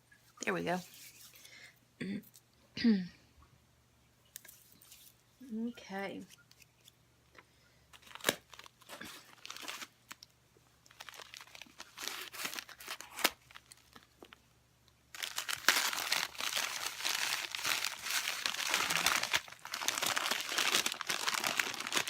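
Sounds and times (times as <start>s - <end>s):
packing material crinkling: 8.0s - 14.4s, 15.1s - 22.0s.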